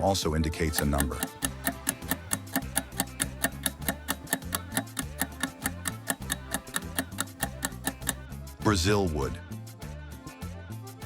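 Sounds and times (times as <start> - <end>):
clock-like ticking: 0.7 - 8.2.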